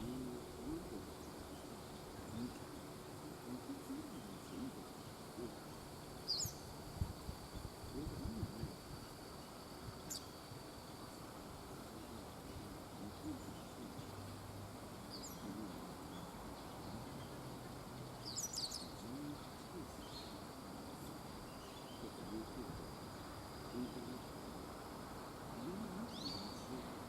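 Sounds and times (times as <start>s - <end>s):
small birds chirping: 0.0s - 27.0s
steady wash of noise: 0.0s - 27.0s.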